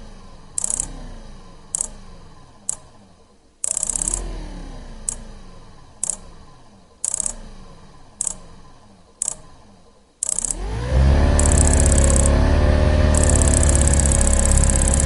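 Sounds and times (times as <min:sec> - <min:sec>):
electric motor clicking and humming: 0:00.5 - 0:01.0, 0:01.7 - 0:02.9, 0:03.6 - 0:04.4, 0:06.0 - 0:06.3, 0:07.0 - 0:07.5, 0:08.2 - 0:08.6, 0:09.2 - 0:15.0.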